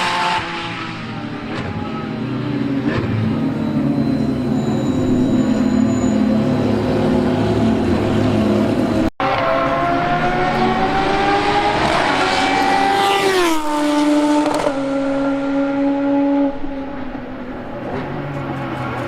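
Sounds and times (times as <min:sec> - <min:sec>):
race car engine passing by: 0:06.6 - 0:19.0.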